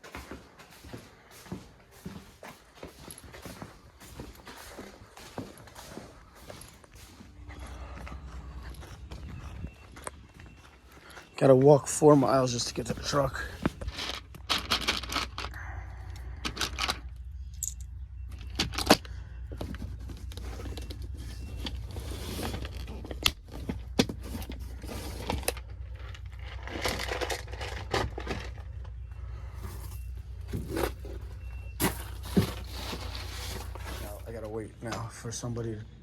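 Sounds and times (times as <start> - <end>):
footsteps: 0.0 - 14.2, 29.5 - 34.6
clothing and gear rustling: 0.0 - 14.8, 19.6 - 34.4
steady low hum: 0.0 - 36.0.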